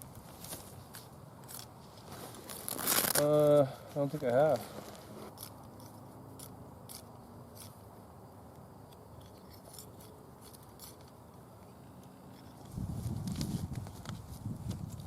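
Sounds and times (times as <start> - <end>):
dry plant stalks snapping: 2.4 - 3.5.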